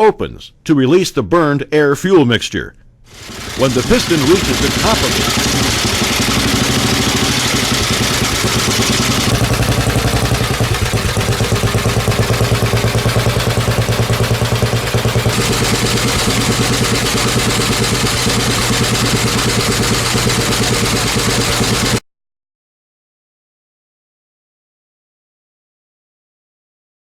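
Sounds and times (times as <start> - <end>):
petrol engine running: 3.1 - 22.0.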